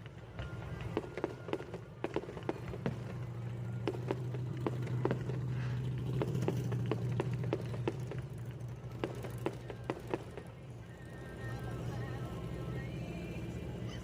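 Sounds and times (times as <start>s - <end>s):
firework pops and crackles: 0.0s - 10.5s.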